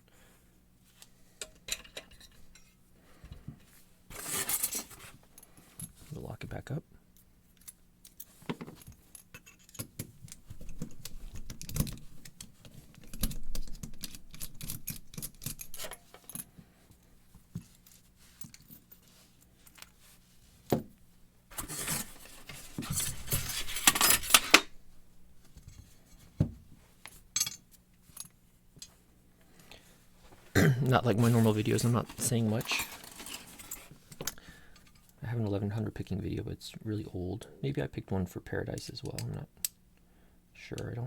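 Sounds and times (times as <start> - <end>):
padlock metal clicks and rattles: 9.2 - 16.4.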